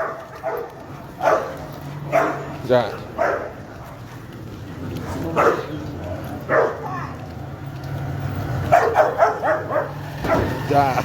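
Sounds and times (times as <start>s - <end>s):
dog barking: 0.0s - 4.0s, 5.1s - 5.8s, 6.4s - 7.1s, 8.6s - 10.6s.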